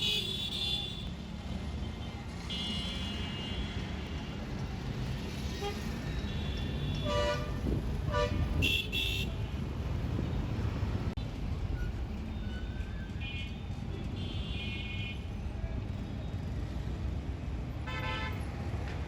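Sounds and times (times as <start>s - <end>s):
road traffic: 0.0s - 19.0s
vehicle horns honking: 2.5s - 3.9s, 5.6s - 9.5s, 17.8s - 18.5s.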